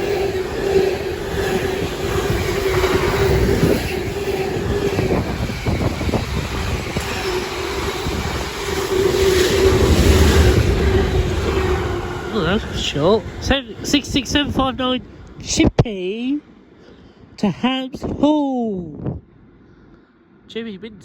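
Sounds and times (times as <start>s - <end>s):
freight train wagons rumbling: 0.0s - 15.8s.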